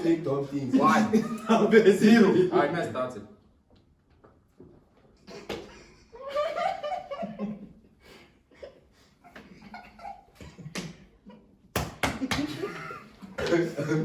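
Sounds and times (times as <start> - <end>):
young men laughing and giggling: 0.0 - 2.8, 5.3 - 11.7, 12.4 - 14.0.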